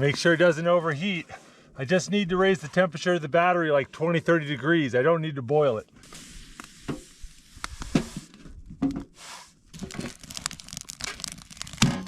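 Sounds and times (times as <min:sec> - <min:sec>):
rustling and crinkling: 0:06.0 - 0:12.0.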